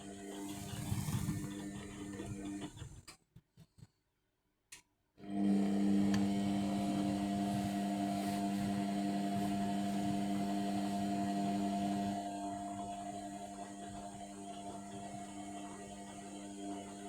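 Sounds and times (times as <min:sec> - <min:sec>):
washing machine motor humming: 0:00.0 - 0:03.0, 0:05.2 - 0:17.0.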